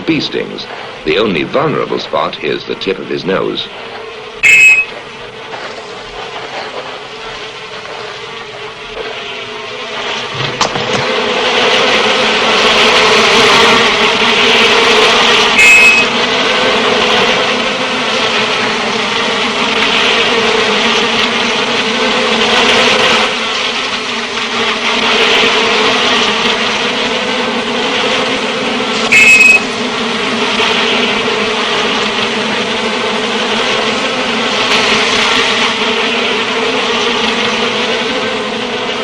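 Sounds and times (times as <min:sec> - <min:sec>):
bees buzzing loudly: 0:00.0 - 0:39.0
short sharp high sounds: 0:04.4 - 0:04.9, 0:15.6 - 0:16.1, 0:29.1 - 0:29.6.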